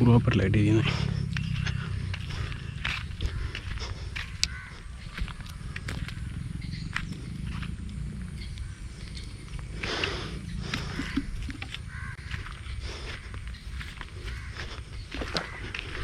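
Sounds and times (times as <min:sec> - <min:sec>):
harsh animal call: 0:00.0 - 0:16.0
steady low rumble: 0:00.0 - 0:16.0.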